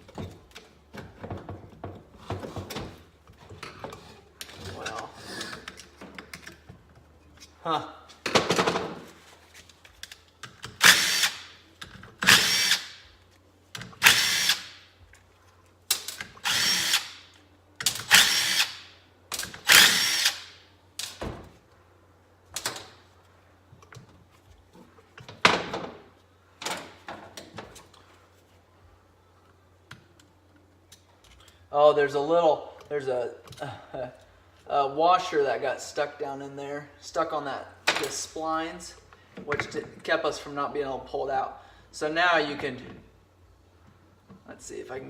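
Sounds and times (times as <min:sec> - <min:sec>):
cordless drill bursts: 0:10.8 - 0:11.5, 0:12.2 - 0:13.0, 0:14.0 - 0:14.8, 0:16.4 - 0:17.2, 0:18.1 - 0:18.8, 0:19.7 - 0:20.5.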